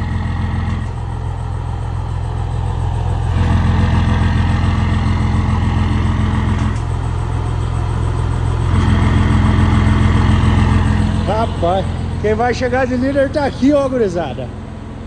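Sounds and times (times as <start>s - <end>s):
diesel truck engine running: 0.0s - 15.0s.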